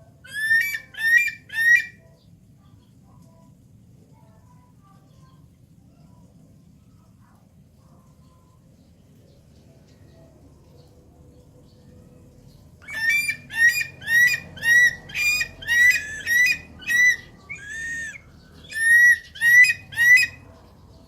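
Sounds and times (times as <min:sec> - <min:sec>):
bird calling: 0:00.2 - 0:02.1, 0:12.8 - 0:20.5.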